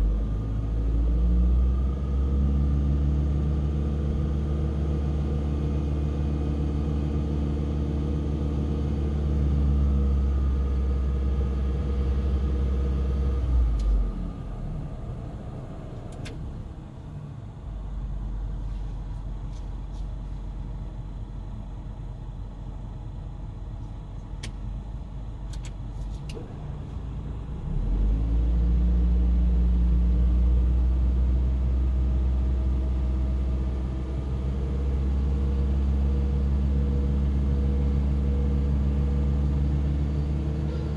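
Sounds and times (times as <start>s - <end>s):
quiet rumble: 0.0s - 40.9s
air conditioning low hum: 7.4s - 28.9s.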